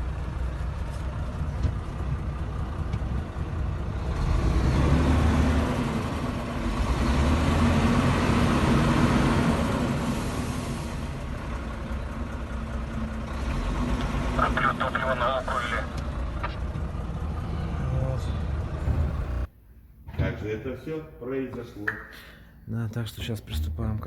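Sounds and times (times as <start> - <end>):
diesel truck engine knocking: 0.0 - 4.1, 11.2 - 14.2.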